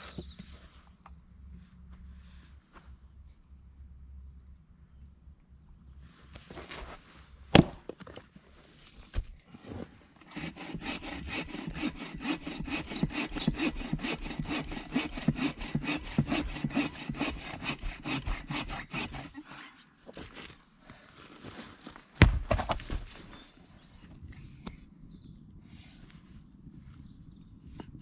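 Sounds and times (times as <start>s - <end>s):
hand saw cutting wood: 10.2s - 19.7s.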